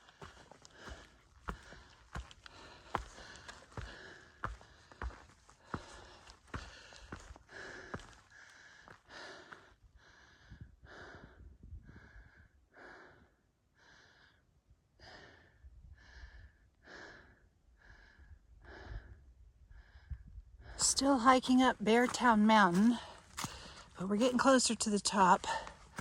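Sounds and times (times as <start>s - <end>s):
person breathing hard: 0.1s - 14.4s, 23.0s - 24.0s.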